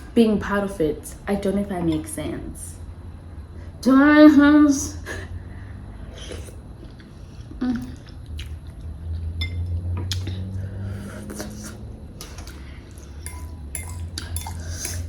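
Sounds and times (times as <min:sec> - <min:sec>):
steady low hum: 0:00.0 - 0:15.0
wet chewing of noodles: 0:06.1 - 0:15.0.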